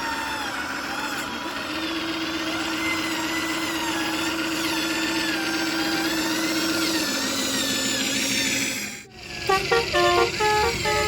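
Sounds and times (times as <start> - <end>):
warbling horn melody: 9.5 - 11.0.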